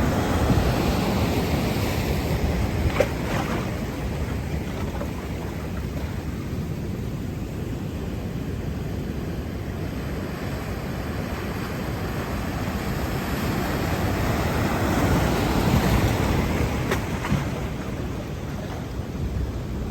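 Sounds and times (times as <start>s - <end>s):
surf breaking: 0.0s - 6.5s
wind buffeting microphone: 0.0s - 8.7s.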